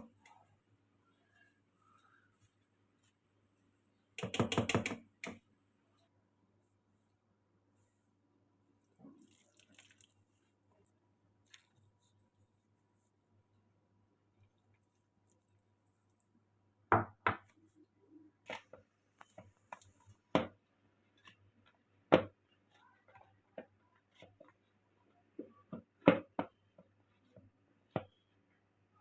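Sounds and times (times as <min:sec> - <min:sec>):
kitchen knocks and clicks: 0:04.2 - 0:05.4.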